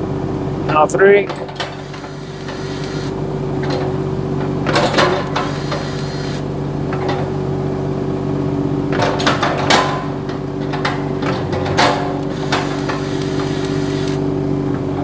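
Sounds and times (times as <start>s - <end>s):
diesel engine idling: 0.0s - 8.9s.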